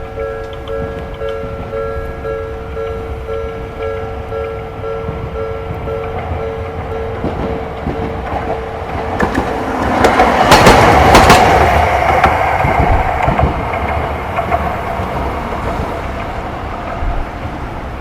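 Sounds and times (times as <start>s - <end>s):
streetcar wheels clacking on rails: 0.0s - 18.0s.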